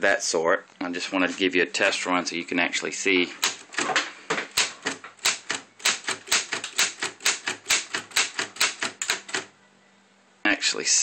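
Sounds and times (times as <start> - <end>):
manual typewriter typing: 3.4 - 9.5.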